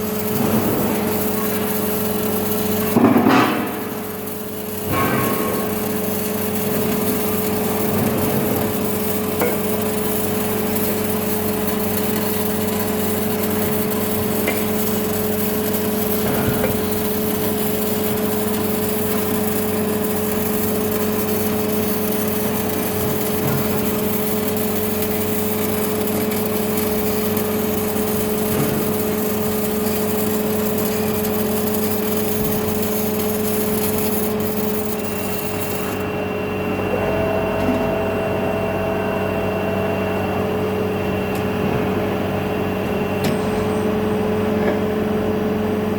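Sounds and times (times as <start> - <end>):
welding hiss and crackle: 0.0 - 36.1
electrical hum: 0.0 - 45.9.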